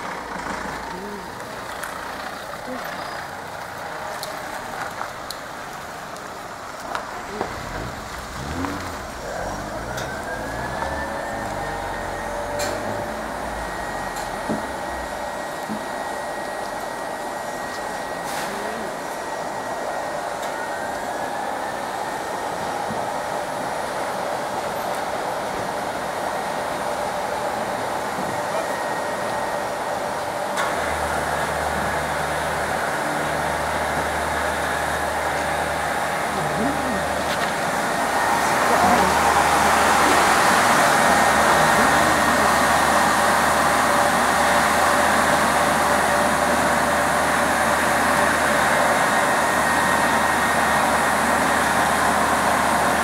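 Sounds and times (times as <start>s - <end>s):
deep engine hum: 7.1s - 19.2s, 30.8s - 53.0s
machinery blower rush: 7.3s - 16.0s, 30.6s - 53.0s.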